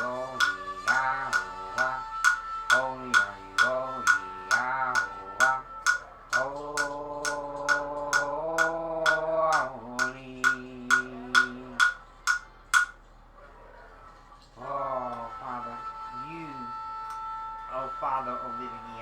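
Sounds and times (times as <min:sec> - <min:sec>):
wordless sung note: 0:00.0 - 0:11.9, 0:15.1 - 0:19.0
percussive clicking beat: 0:00.0 - 0:13.0.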